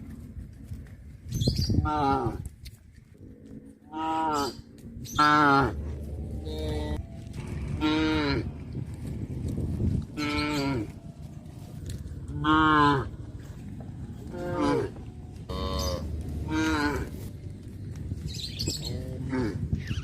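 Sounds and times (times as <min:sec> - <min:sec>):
cattle mooing: 0:03.3 - 0:08.6, 0:10.1 - 0:11.0, 0:12.2 - 0:13.2, 0:14.2 - 0:17.3.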